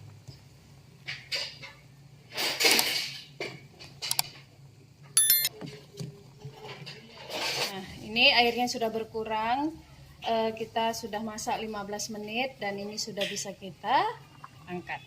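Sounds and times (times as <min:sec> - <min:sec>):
short ringing clink: 0:05.2 - 0:05.5.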